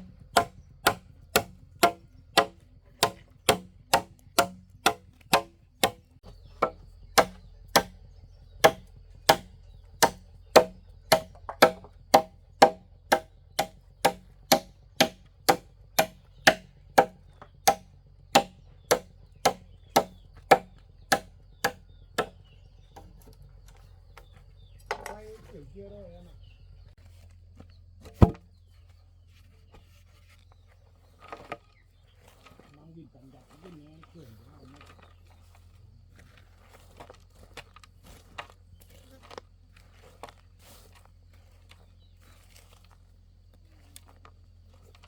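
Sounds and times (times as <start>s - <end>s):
blade chopping: 0.0s - 8.0s, 8.6s - 22.4s.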